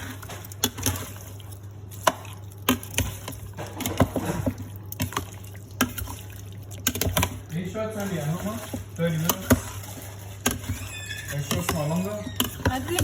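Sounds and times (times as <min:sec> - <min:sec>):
wet liquid sounds: 0:00.0 - 0:13.0
containers and utensils knocking: 0:06.9 - 0:13.0.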